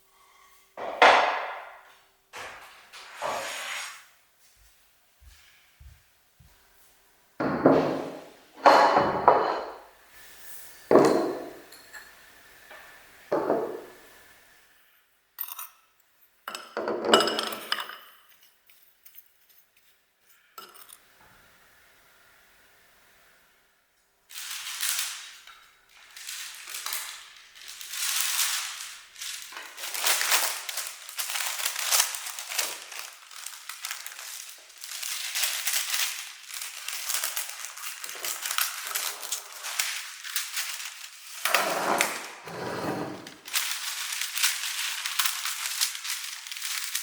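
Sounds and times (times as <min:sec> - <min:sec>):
ingredients scraping and crunching: 0:24.4 - 0:42.3, 0:43.1 - 0:47.0.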